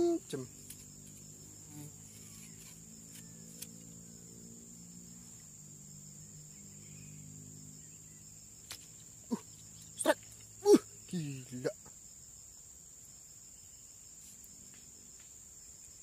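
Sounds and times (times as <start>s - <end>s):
high-pitched insect drone: 0.0s - 16.0s.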